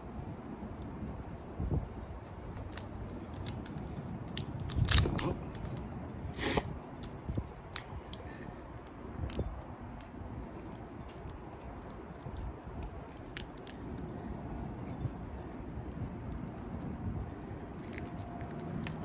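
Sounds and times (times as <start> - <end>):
wire clicks and snips: 2.5 - 5.9.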